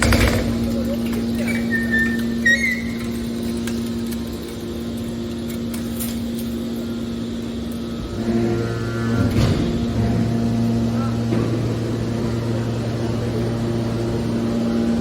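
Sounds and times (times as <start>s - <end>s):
baler motor hum: 0.0s - 15.0s
high squeal: 1.4s - 3.2s.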